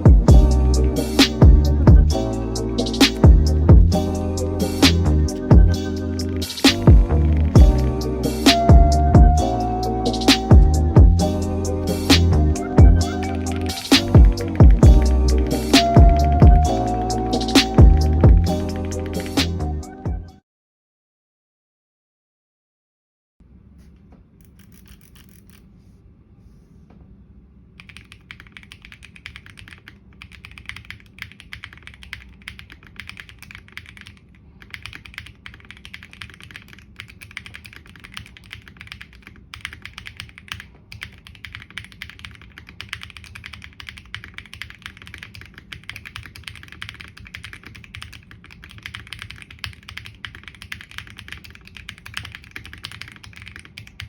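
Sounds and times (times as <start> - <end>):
mechanical keyboard typing: 4.5 - 8.9, 11.6 - 19.6, 27.8 - 54.0.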